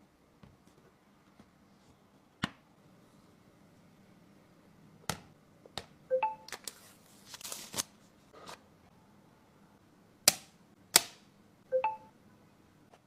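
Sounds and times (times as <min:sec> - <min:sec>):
packaging rustling and sliding: 0:06.6 - 0:08.6.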